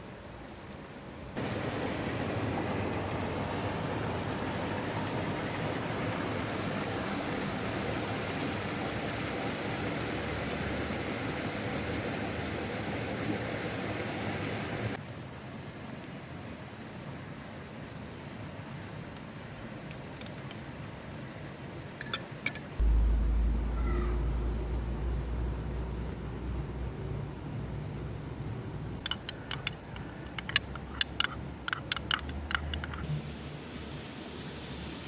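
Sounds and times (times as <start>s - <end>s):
steady rushing noise: 22.8s - 29.0s.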